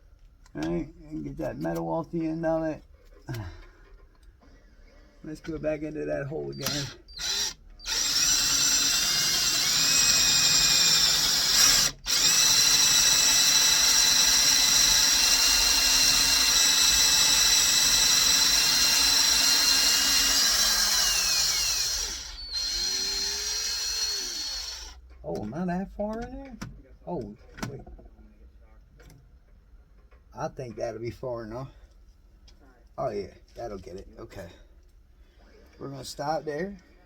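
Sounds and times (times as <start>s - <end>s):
electric drill boring into metal: 6.5s - 25.0s.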